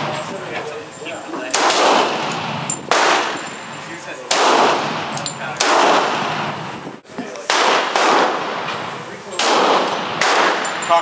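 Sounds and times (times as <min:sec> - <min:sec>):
handgun shots echoing: 0:01.5 - 0:03.5, 0:04.3 - 0:06.2, 0:07.5 - 0:08.6, 0:09.4 - 0:11.0.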